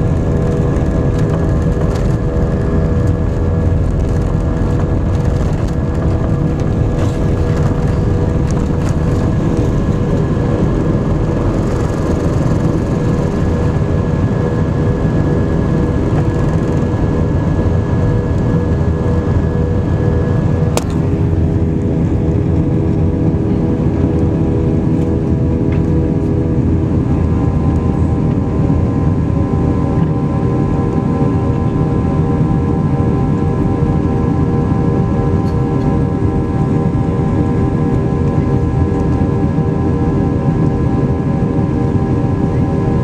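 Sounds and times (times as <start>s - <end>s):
jet engines from cabin: 0.0s - 43.0s.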